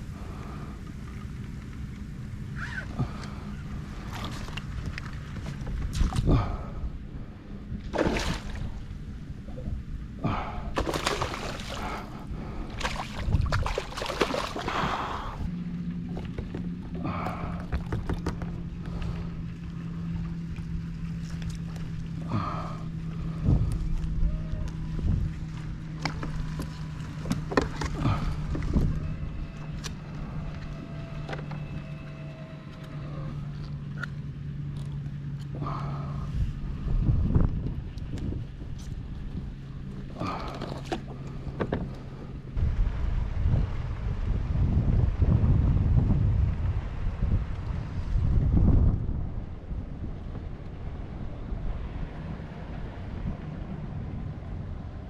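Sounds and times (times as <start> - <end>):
steady low hum: 0.0 - 55.0
wind rumble: 0.0 - 55.0
water splashing against kayak: 7.8 - 9.0, 10.2 - 24.2
gear knocking against kayak hull: 17.6 - 19.0.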